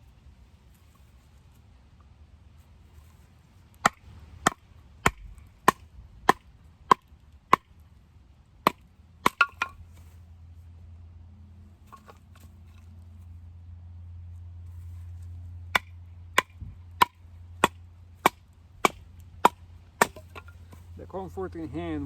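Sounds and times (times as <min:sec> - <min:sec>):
baton knocking knife through wood: 0:15.7 - 0:20.9.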